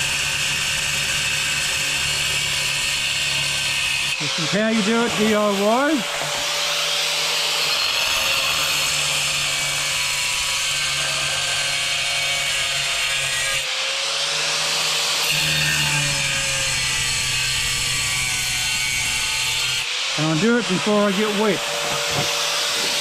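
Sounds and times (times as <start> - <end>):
angle grinder cutting ceramic tile: 0.0 - 23.0.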